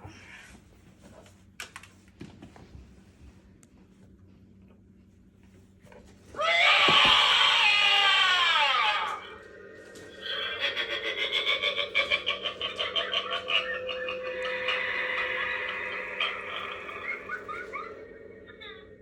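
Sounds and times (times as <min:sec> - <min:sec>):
rapid pulsing cackle: 0:10.0 - 0:19.0.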